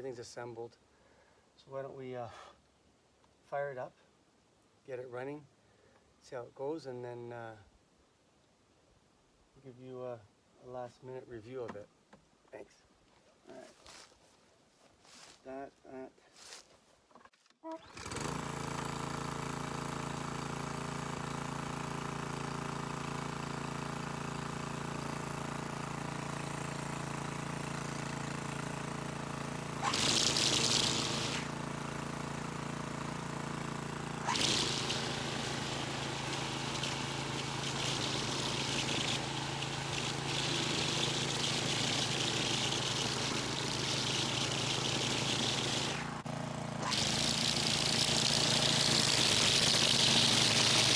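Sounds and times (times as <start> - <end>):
string trimmer engine running: 17.8 - 50.9
trimmer line hissing against rock: 29.8 - 31.6, 34.2 - 50.9.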